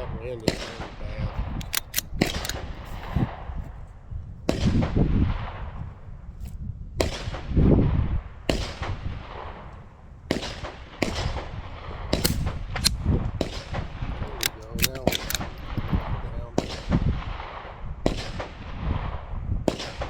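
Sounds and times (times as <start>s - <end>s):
wind rumble on microphone: 0.0s - 20.0s
gunshots with echo: 0.4s - 3.5s, 10.3s - 19.0s.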